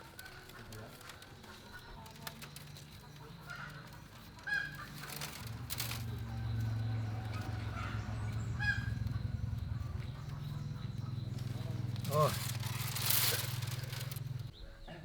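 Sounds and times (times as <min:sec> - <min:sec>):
fowl clucking: 0:03.4 - 0:05.5, 0:07.4 - 0:12.3.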